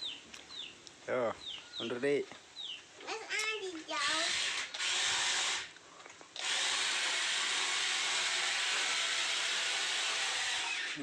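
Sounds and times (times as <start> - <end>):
small excavator motor whirring: 3.9 - 5.8, 6.4 - 11.0.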